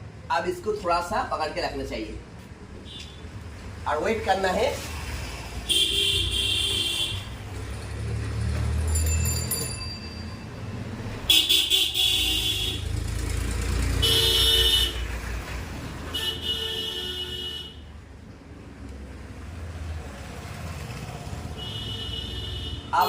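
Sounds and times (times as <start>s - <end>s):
vehicle engines rumbling: 0.0s - 23.0s
car horns honking: 5.7s - 7.4s, 11.3s - 12.9s, 13.9s - 15.1s, 16.1s - 17.9s, 21.5s - 23.0s.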